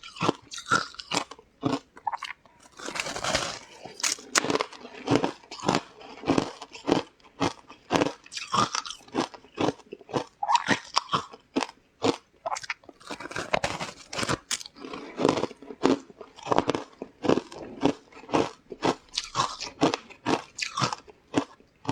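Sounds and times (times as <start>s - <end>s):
chewing crunchy food: 0.0s - 21.9s.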